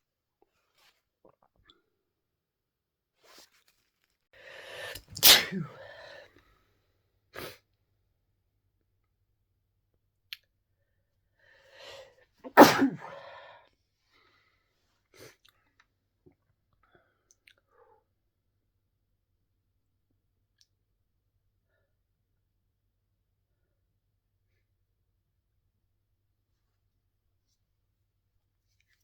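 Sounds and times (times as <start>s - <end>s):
person sneezing: 4.7s - 6.2s, 12.5s - 13.5s.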